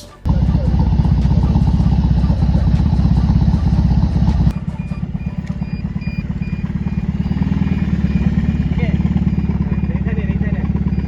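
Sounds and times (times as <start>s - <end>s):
motorcycle engine running: 0.2s - 11.0s.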